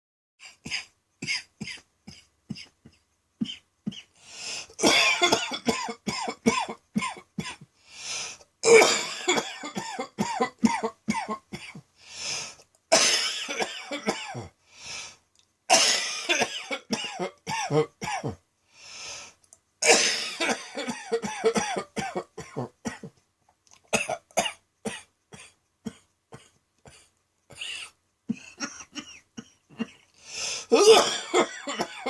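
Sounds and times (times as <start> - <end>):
person coughing: 0.5 - 4.1, 4.7 - 7.7, 8.6 - 11.8, 12.9 - 14.6, 15.7 - 18.4, 19.8 - 23.1, 23.9 - 32.0.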